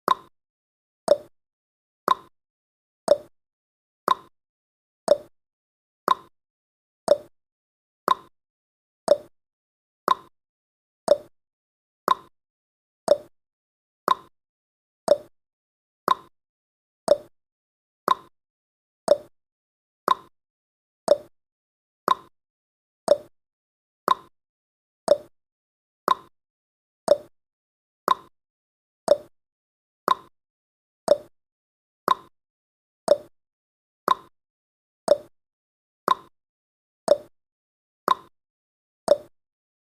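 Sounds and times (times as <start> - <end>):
clock tick: 0.1 - 0.3, 1.1 - 1.3, 2.1 - 2.3, 3.1 - 3.3, 4.1 - 4.3, 5.1 - 5.3, 6.1 - 6.3, 7.1 - 7.3, 8.1 - 8.3, 9.1 - 9.3, 10.1 - 10.3, 11.1 - 11.3, 12.1 - 12.3, 13.1 - 13.3, 14.1 - 14.3, 15.1 - 15.3, 16.1 - 16.3, 17.1 - 17.3, 18.1 - 18.3, 19.1 - 19.3, 20.1 - 20.3, 21.1 - 21.3, 22.1 - 22.3, 23.1 - 23.3, 24.1 - 24.3, 25.1 - 25.3, 26.1 - 26.3, 27.1 - 27.3, 28.1 - 28.3, 29.1 - 29.3, 30.1 - 30.3, 31.1 - 31.3, 32.1 - 32.3, 33.1 - 33.3, 34.1 - 34.3, 35.1 - 35.3, 36.1 - 36.3, 37.1 - 37.3, 38.1 - 38.3, 39.1 - 39.3.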